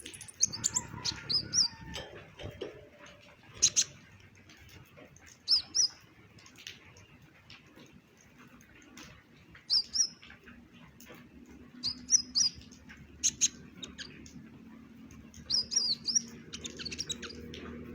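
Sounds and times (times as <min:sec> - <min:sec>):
sunbird chirping and twittering: 0:00.0 - 0:01.9, 0:03.5 - 0:04.0, 0:05.4 - 0:06.0, 0:09.7 - 0:10.3, 0:11.8 - 0:14.5, 0:15.1 - 0:17.9.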